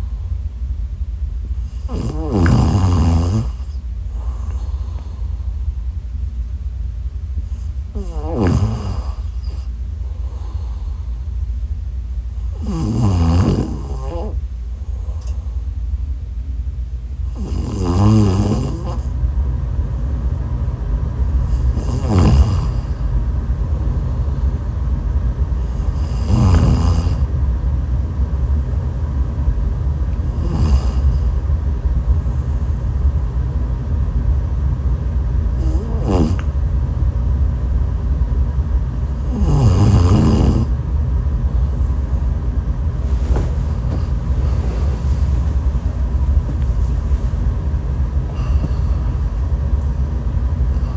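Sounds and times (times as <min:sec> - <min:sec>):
steady low rumble: 0:00.0 - 0:50.9
person snoring: 0:01.7 - 0:05.3, 0:07.9 - 0:11.2, 0:12.5 - 0:14.4, 0:17.3 - 0:19.1, 0:21.4 - 0:23.0, 0:25.6 - 0:27.3, 0:30.2 - 0:31.4, 0:35.5 - 0:36.5, 0:39.2 - 0:40.7, 0:48.3 - 0:49.3.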